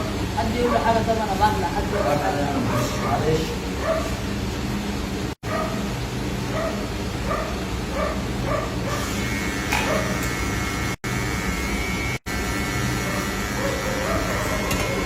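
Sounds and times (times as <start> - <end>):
electric hair clippers buzzing: 9.0 - 15.0.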